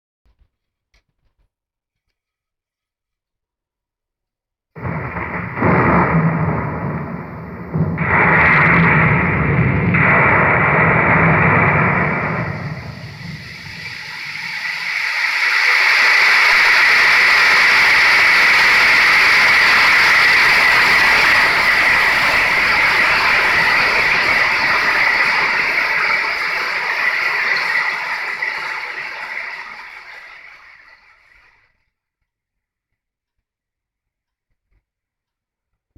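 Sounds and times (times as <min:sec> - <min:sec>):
low thunder rumble: 0:04.8 - 0:30.3
heavy rain downpour: 0:04.8 - 0:31.4.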